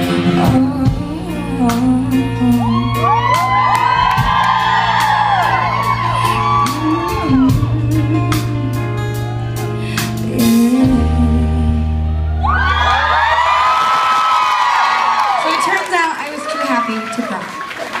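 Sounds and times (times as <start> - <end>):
live pop ballad chords: 0.0 - 14.5
audience screaming and cheering: 2.4 - 9.8, 12.0 - 18.0.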